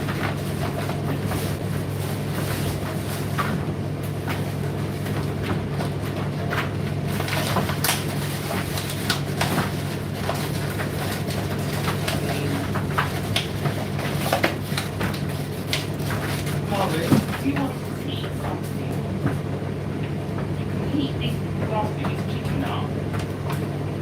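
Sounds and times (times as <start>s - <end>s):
tumble dryer humming: 0.0s - 24.0s.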